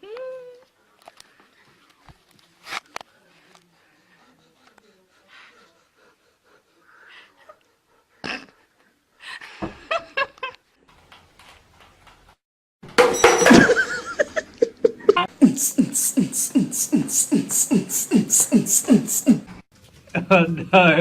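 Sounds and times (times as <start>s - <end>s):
beatboxing: 15.2s - 19.6s.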